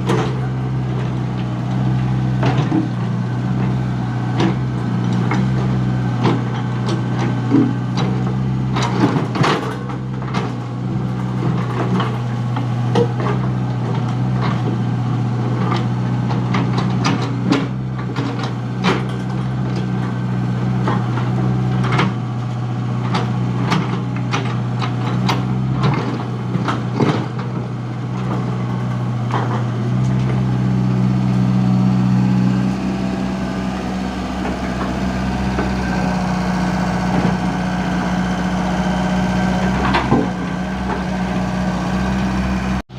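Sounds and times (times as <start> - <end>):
excavator diesel engine running: 0.0 - 42.9
knocks and clanks: 23.0 - 30.6, 39.6 - 41.1.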